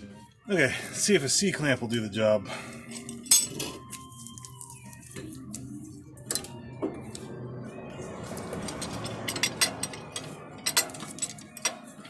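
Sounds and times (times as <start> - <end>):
metal tools clinking and rattling: 2.9 - 4.5, 8.4 - 12.0.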